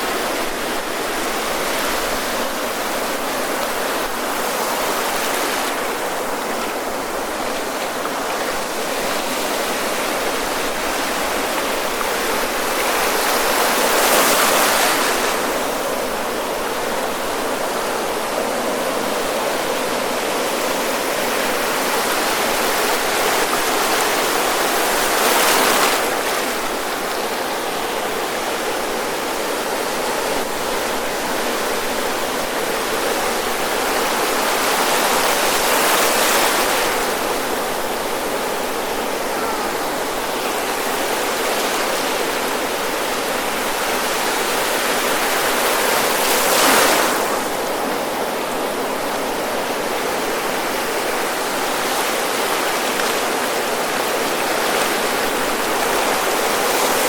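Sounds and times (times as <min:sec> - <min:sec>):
ocean surf washing in: 0:00.0 - 0:57.0
wave breaking: 0:45.0 - 0:49.8.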